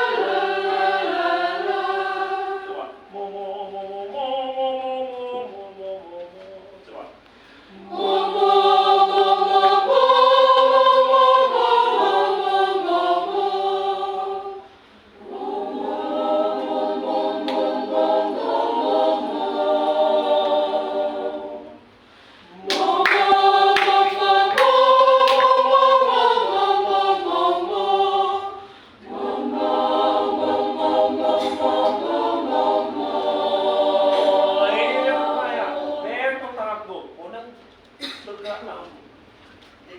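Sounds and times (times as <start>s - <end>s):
mixed choir singing a cappella: 0.0s - 37.2s.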